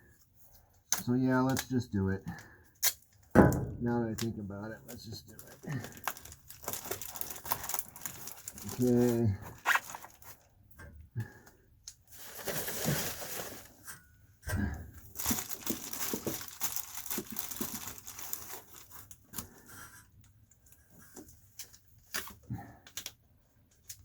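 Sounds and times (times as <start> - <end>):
foil bubble insulation crinkling: 4.2 - 10.6, 12.1 - 13.8, 15.1 - 19.7
tape tearing off roll: 9.5 - 10.4.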